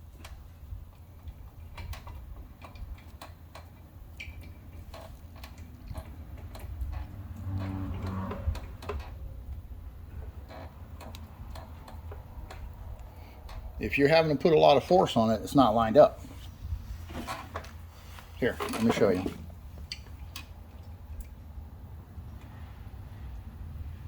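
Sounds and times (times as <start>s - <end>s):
handling noise: 16.2s - 20.2s.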